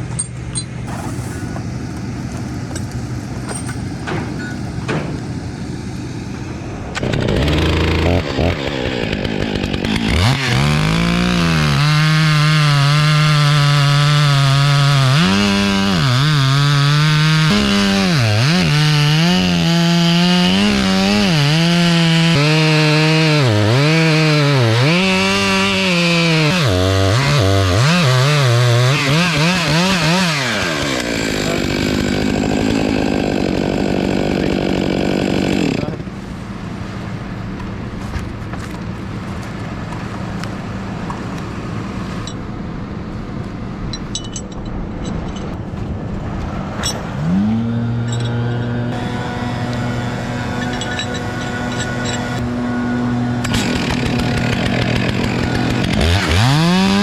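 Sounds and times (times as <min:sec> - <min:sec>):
low steady engine noise: 0:00.0 - 0:07.1, 0:35.8 - 0:54.4
chainsaw cutting log: 0:00.8 - 0:36.3, 0:46.8 - 0:57.0.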